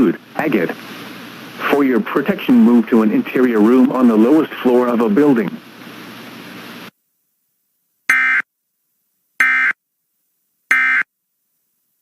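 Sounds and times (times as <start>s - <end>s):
digital data tone bursts: 8.1s - 8.4s, 9.4s - 9.8s, 10.7s - 11.1s.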